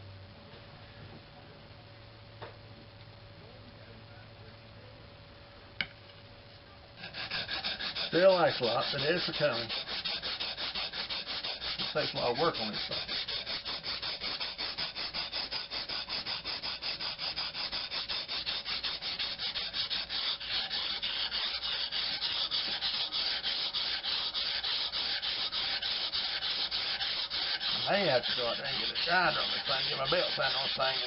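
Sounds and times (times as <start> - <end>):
knife scraping on whetstone: 7.0 - 31.0.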